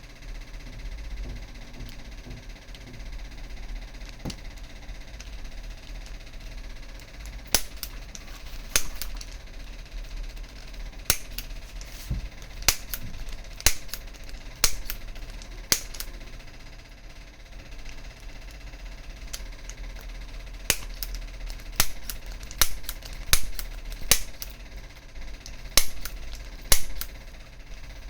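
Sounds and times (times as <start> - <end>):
sharp clicks of adjusting tool: 5.2 - 9.4, 10.6 - 16.2, 19.2 - 24.6, 25.3 - 28.0.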